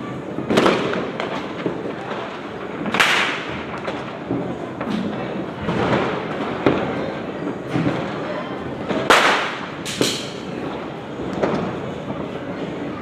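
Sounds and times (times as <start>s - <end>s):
steady background noise: 0.0s - 13.0s
firecracker bangs: 0.2s - 8.2s, 8.8s - 10.6s
scattered cracks: 0.8s - 5.0s, 9.1s - 10.3s.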